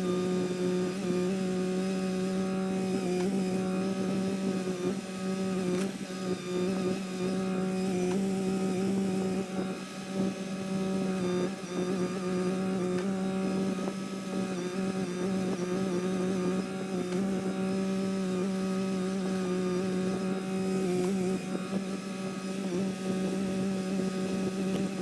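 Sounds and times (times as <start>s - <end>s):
mini-excavator droning hum: 0.0s - 25.0s.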